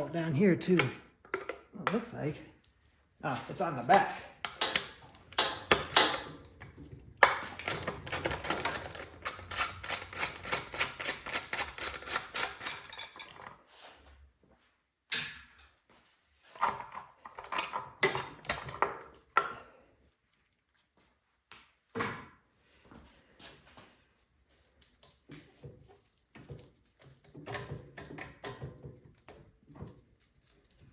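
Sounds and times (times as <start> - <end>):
metal tools clanking: 12.6 - 13.5.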